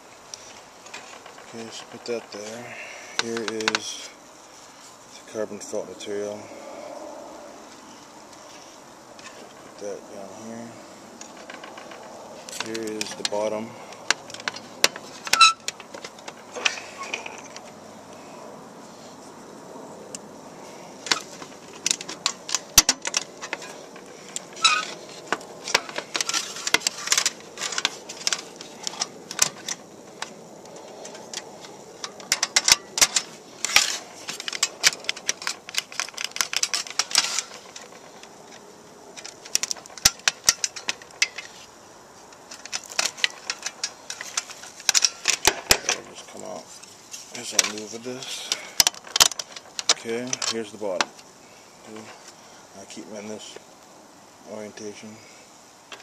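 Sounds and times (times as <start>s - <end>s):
metal stove parts clinking: 31.1s - 38.0s.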